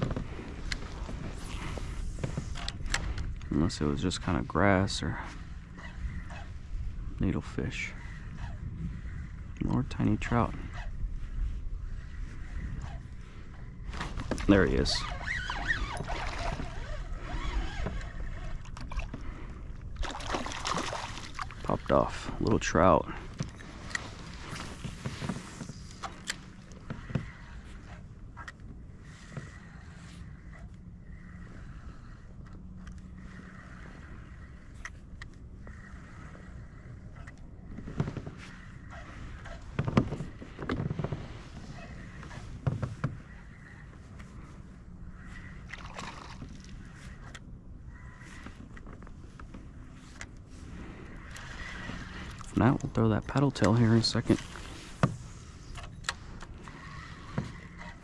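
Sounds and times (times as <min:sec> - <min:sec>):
water around kayak hull: 0:00.0 - 0:58.0
spinning reel reeling: 0:11.8 - 0:18.8, 0:23.6 - 0:39.6, 0:50.8 - 0:52.5, 0:53.5 - 0:58.0
kayak knocking and water sloshing: 0:13.8 - 0:27.9, 0:45.1 - 0:47.3.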